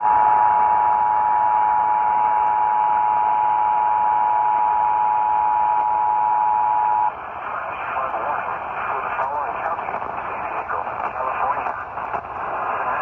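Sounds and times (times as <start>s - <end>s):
radio hiss: 5.6s - 13.0s.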